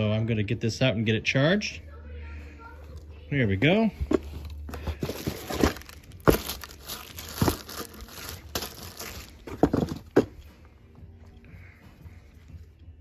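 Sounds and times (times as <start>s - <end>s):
packaging crinkling and rustling: 4.0s - 10.4s.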